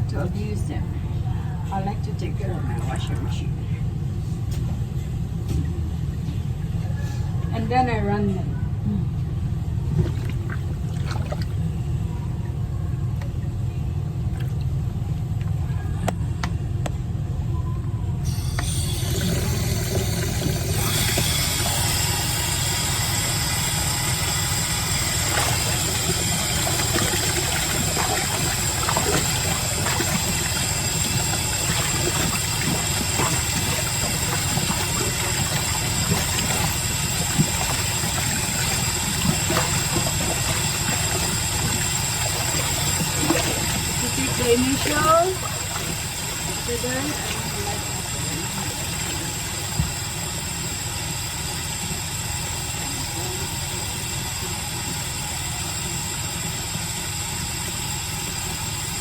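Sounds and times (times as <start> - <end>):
steady low hum: 0.0 - 59.0
tap water running into sink: 18.5 - 50.8.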